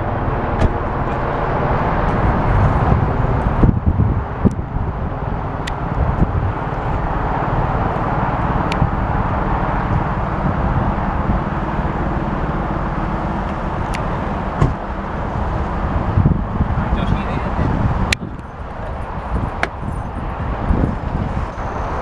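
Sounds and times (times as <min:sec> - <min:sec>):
helicopter rotor and turbine: 0:00.0 - 0:22.0.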